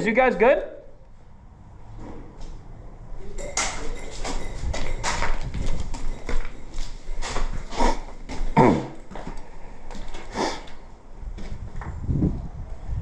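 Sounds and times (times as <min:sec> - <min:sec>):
footsteps and gear rustling: 0:04.2 - 0:11.7.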